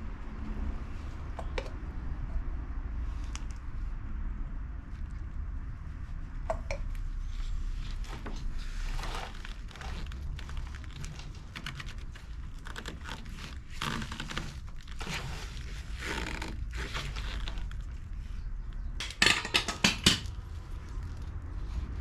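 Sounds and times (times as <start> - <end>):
low steady rumble: 0.0 - 19.3, 20.2 - 22.0
rustling and crinkling: 4.8 - 19.0, 20.2 - 22.0.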